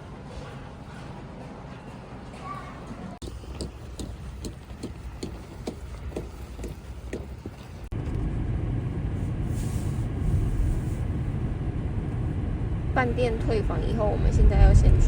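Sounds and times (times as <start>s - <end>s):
car driving rumble from inside: 7.9s - 15.0s.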